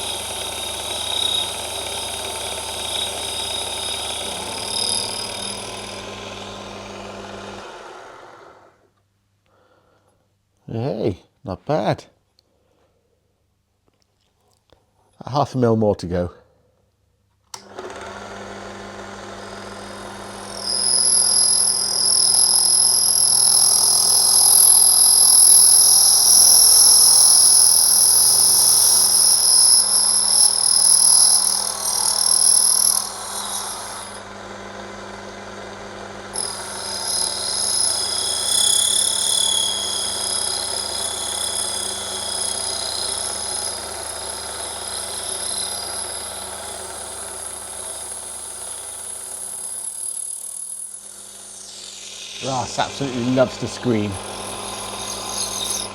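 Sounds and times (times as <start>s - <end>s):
high-pitched cutting whine: 0.0s - 6.5s, 20.5s - 34.2s, 51.4s - 55.9s
lathe motor hum: 0.0s - 8.8s, 17.6s - 55.9s.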